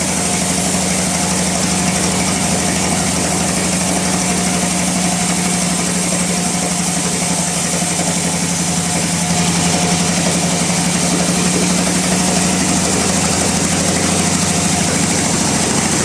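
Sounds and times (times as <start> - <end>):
bandsaw humming: 0.0 - 16.0.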